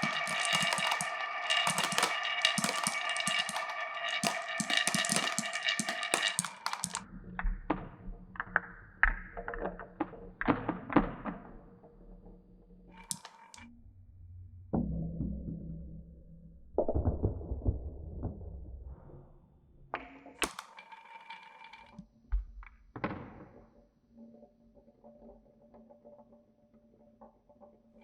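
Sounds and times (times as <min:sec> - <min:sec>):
marbles rolling down wooden run: 0:00.0 - 0:07.0, 0:13.0 - 0:13.6, 0:20.4 - 0:22.0.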